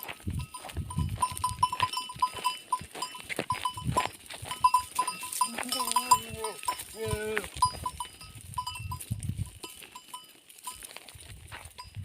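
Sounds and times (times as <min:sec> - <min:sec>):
goat bells clinking: 0:00.0 - 0:12.0
goat bleating: 0:05.0 - 0:07.8.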